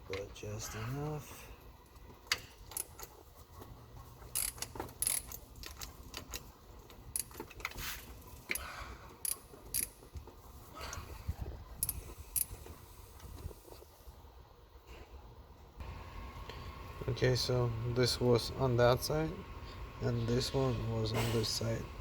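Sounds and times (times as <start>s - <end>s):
ratchet wrench clicking: 4.3s - 6.4s, 7.1s - 7.7s, 9.2s - 10.0s, 11.8s - 12.6s.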